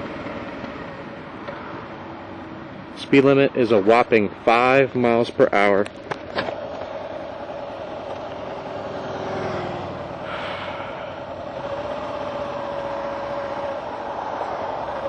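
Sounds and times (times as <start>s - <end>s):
motorcycle engine running: 6.6s - 15.0s.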